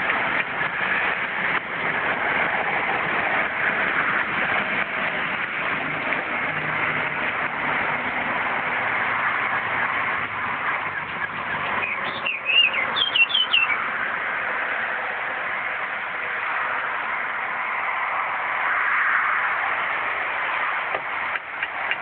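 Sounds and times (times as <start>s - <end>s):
bird squawky calls: 11.8s - 13.8s.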